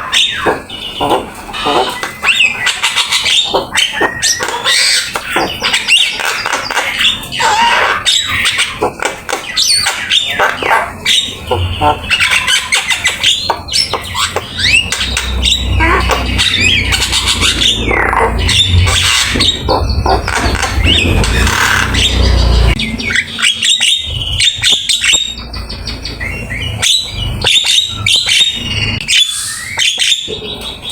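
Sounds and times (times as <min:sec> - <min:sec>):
low rumble: 0:15.1 - 0:23.1.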